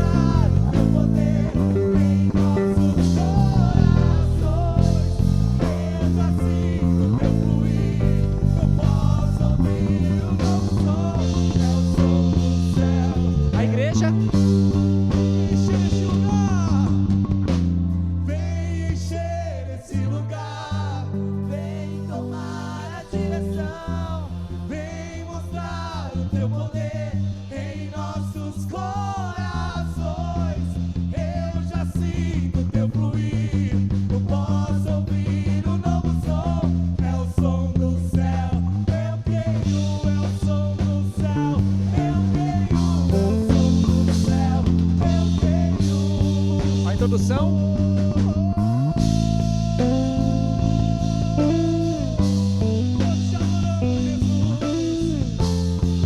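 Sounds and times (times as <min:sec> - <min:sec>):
person singing: 0:00.0 - 0:17.2, 0:18.3 - 0:56.0
drums: 0:00.0 - 0:56.0
electric bass: 0:00.0 - 0:56.0
guitar: 0:00.0 - 0:56.0.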